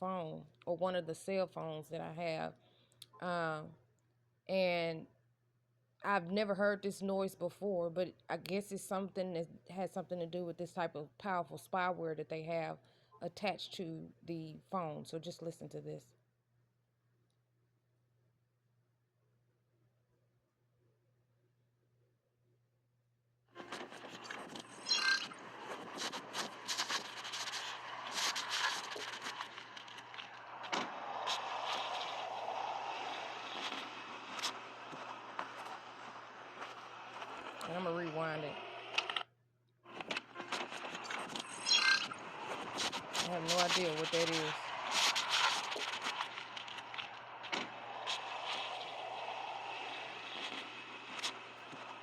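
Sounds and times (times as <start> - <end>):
scratchy clicks and rustles: 23.6 - 37.9, 39.9 - 52.0
short stepped tones: 23.6 - 38.0
steady low hum: 23.6 - 39.1
crackly background noise: 23.6 - 39.3, 39.9 - 52.0.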